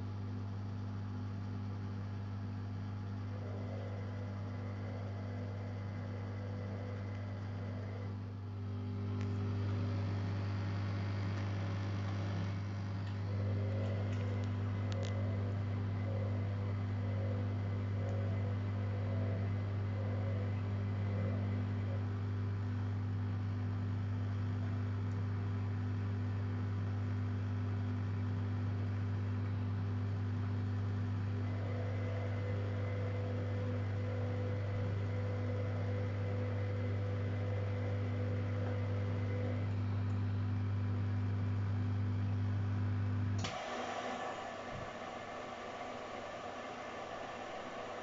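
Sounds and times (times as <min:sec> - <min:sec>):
washer-dryer humming: 0:01.9 - 0:23.9, 0:29.0 - 0:48.0
faint high whine: 0:43.3 - 0:48.0.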